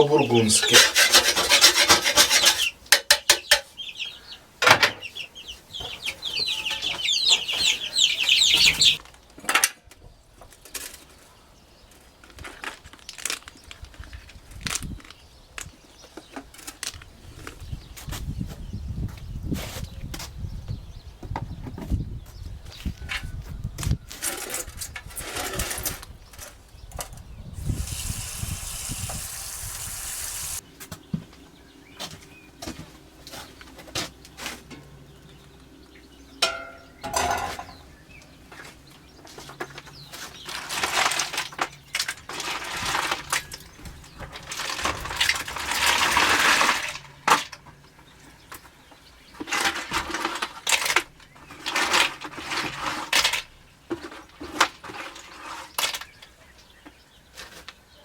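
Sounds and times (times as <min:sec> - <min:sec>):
objects clattering on pots and dishes: 0:00.6 - 0:03.7, 0:36.4 - 0:37.8.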